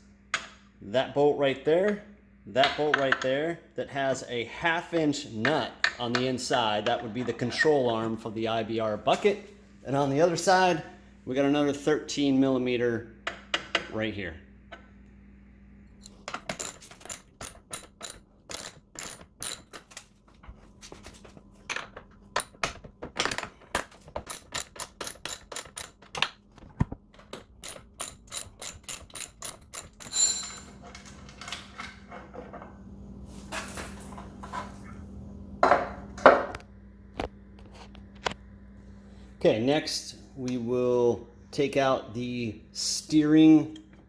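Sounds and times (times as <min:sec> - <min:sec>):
socket ratchet clicking: 0:24.2 - 0:26.0, 0:27.3 - 0:30.2.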